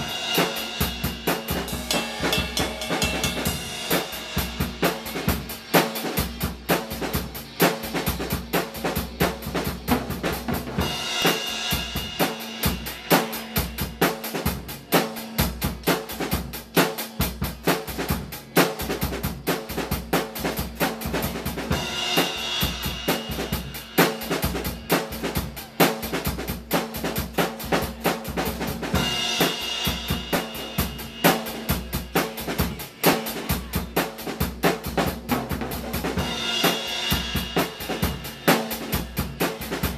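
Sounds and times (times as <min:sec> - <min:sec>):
cymbal washes: 0:00.0 - 0:05.2
drum kit groove: 0:00.0 - 0:39.9.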